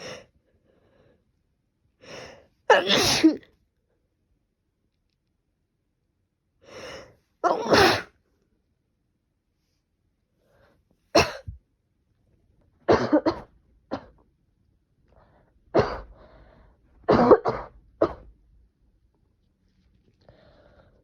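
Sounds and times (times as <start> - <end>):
person coughing: 2.7 - 3.4, 7.4 - 8.1, 11.2 - 11.6, 12.9 - 14.2, 17.1 - 18.3.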